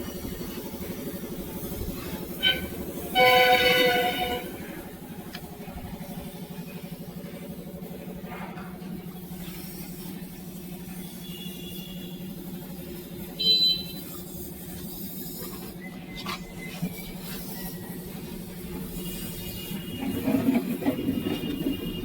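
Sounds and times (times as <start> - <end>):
low machine hum: 0.0 - 22.0.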